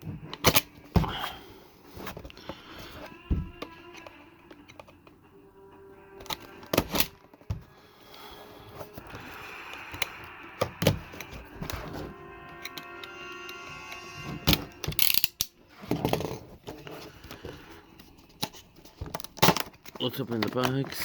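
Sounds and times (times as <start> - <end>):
faint music: 0.0 - 21.0
packaging being handled and opened: 14.4 - 21.0.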